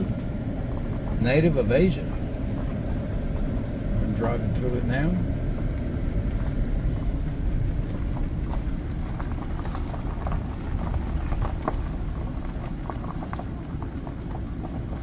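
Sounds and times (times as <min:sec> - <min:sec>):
car engine and tyres rumbling: 0:00.0 - 0:15.0
small ticks and crackles: 0:05.8 - 0:15.0.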